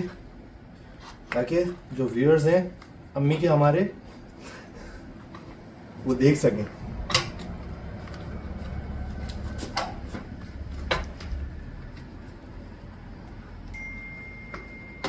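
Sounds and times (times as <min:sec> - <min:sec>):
thin steady high tone: 0:13.6 - 0:15.0.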